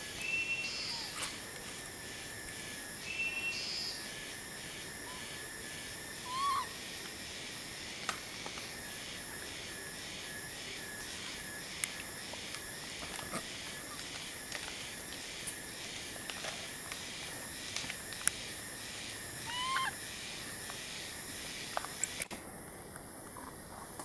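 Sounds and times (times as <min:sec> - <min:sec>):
high insect chorus: 0:00.0 - 0:24.0
rising and falling animal call: 0:06.2 - 0:06.7, 0:19.4 - 0:20.0.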